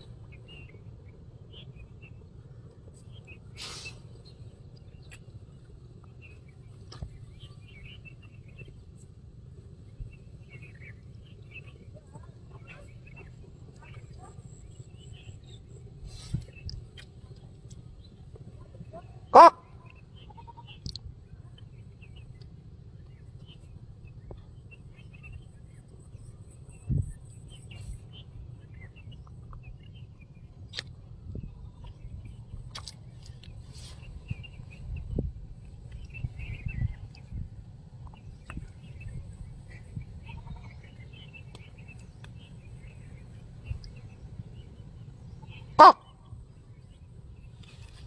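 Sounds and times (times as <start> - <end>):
small birds chirping: 0.0 - 48.0
steady low rumble: 0.0 - 48.0
faint small-bird chirps: 38.1 - 44.8.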